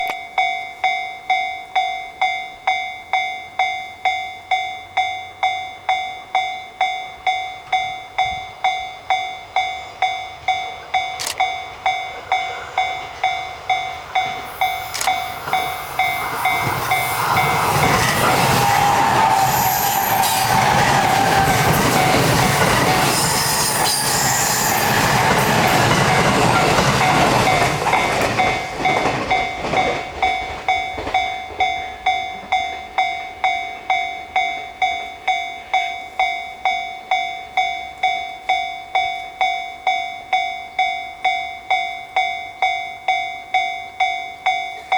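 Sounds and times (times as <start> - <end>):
electronic crossing warning bell: 0.0 - 44.9
train wheels on rail: 1.3 - 44.9
high wheel squeals: 14.2 - 28.8.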